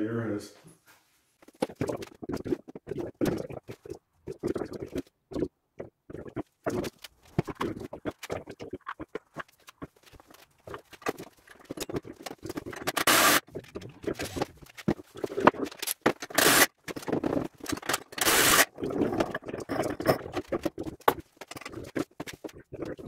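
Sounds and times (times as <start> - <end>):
clicks and knocks of parts: 9.5 - 19.3, 19.9 - 22.6.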